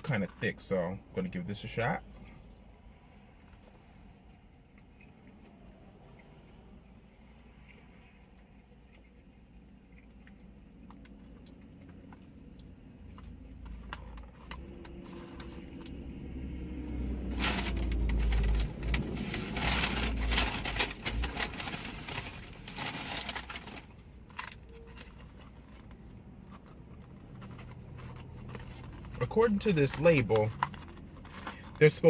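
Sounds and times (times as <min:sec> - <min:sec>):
paper packaging crinkling: 0:16.9 - 0:32.0.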